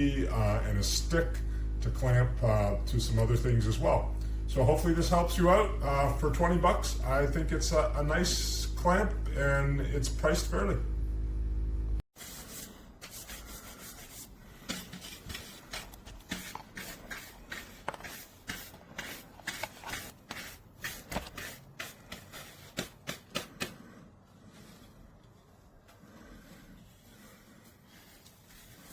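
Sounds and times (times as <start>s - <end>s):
rubbing and handling: 12.1s - 28.9s.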